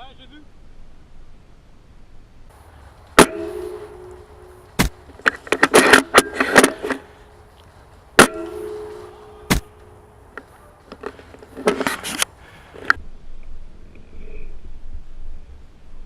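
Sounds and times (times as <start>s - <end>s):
airsoft rifle shots: 3.2s - 7.2s, 8.2s - 10.0s
spring ringing twang: 3.2s - 7.3s, 8.2s - 10.2s
clicks and rattles: 3.2s - 9.2s, 10.3s - 13.0s.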